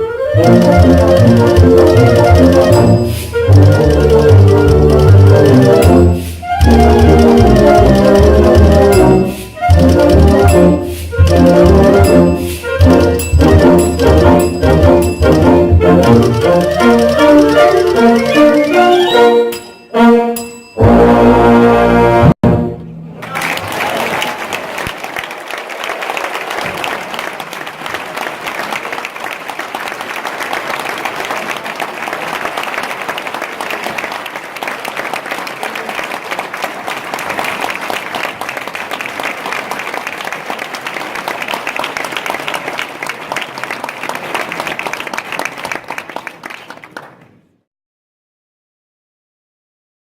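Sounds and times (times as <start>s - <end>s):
audience applauding: 23.2s - 47.4s.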